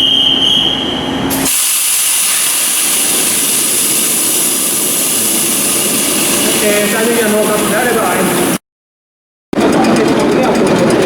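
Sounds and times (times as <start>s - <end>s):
loud steady hiss: 1.3s - 8.6s.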